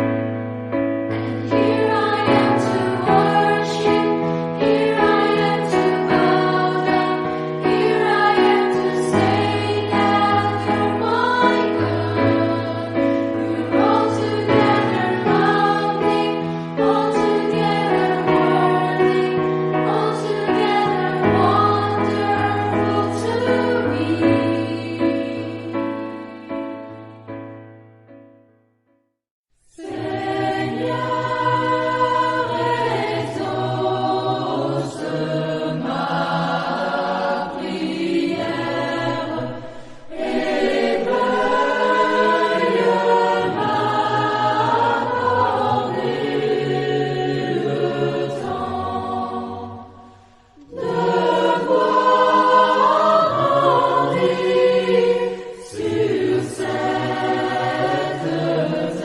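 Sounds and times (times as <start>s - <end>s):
choir singing: 1.1s - 27.3s, 29.7s - 59.0s.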